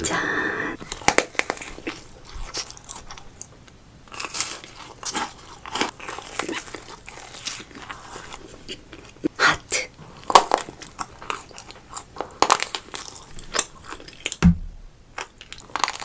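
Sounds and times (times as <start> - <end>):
crunchy chewing: 0.8 - 9.4, 10.0 - 14.4, 15.1 - 16.0.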